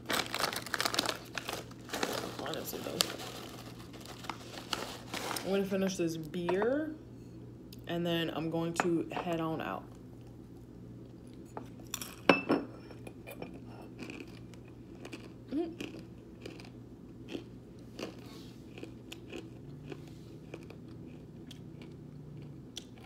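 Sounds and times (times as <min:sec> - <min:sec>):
person chewing crunchy snack: 0:13.5 - 0:23.0.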